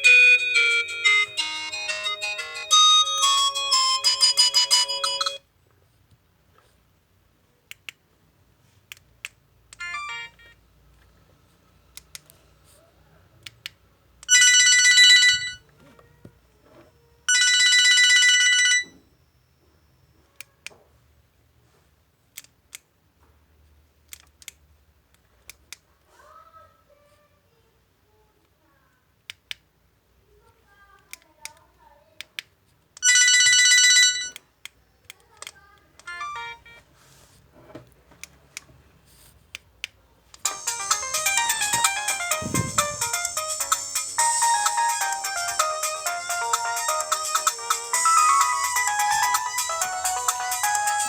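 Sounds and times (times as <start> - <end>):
polyphonic alarm melody: 0.0 - 5.4, 40.4 - 51.0
short melodic phone tone: 0.0 - 5.4
low thump: 42.4 - 43.1.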